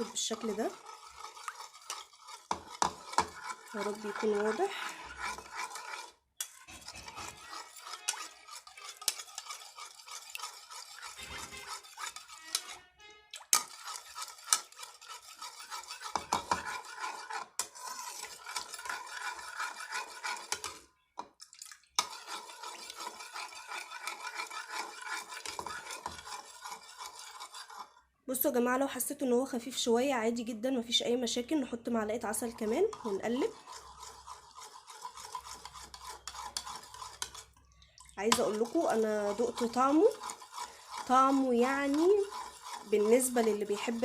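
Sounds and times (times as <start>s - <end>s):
spoon scraping and clinking in dish: 0.0s - 12.8s, 13.4s - 20.8s, 22.0s - 28.0s, 32.4s - 44.0s.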